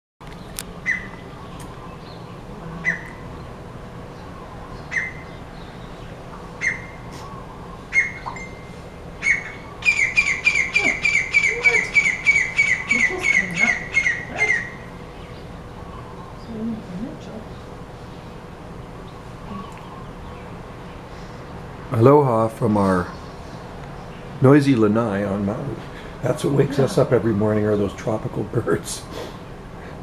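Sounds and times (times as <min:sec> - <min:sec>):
faint steady hum: 0:00.2 - 0:30.0
bird calling sharply: 0:09.2 - 0:14.9.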